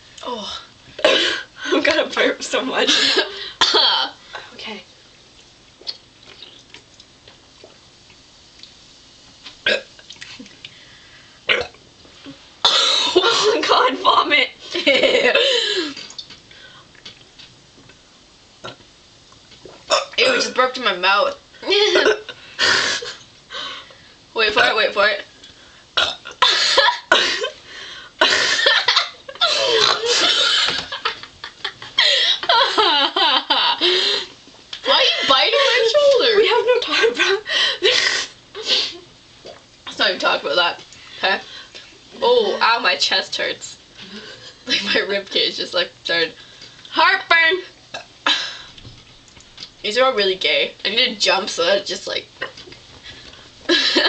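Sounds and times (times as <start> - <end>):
woman burping: 2.9 - 4.1, 9.6 - 10.0, 11.5 - 11.8, 19.9 - 20.6, 26.0 - 27.6, 28.2 - 30.8
person burping: 9.6 - 10.0, 11.5 - 11.8, 26.0 - 26.5.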